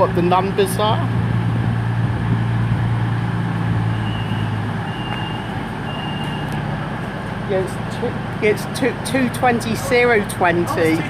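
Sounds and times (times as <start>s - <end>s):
diesel train idling: 0.0s - 11.0s.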